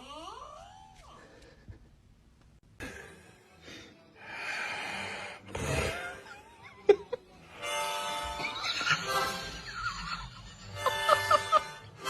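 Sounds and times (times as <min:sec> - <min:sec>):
man snoring: 0:04.4 - 0:06.3.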